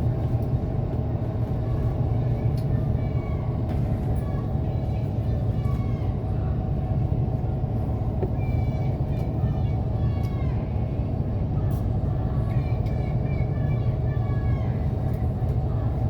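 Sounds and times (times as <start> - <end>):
bus engine rumble: 0.0 - 16.0.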